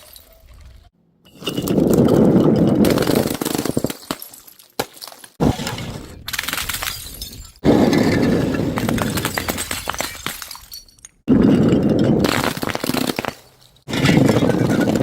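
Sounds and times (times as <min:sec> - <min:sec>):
glass bottles smashing: 0:02.8 - 0:05.4, 0:06.4 - 0:15.0
glass shards crunching: 0:09.0 - 0:11.2.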